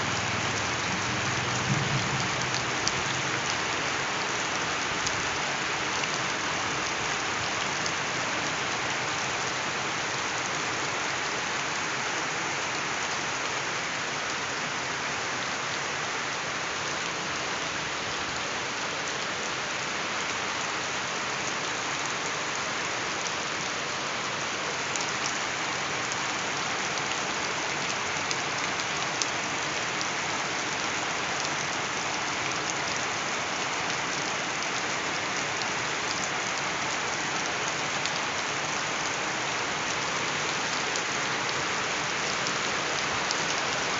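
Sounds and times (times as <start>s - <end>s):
rain pattering: 0.0s - 43.9s.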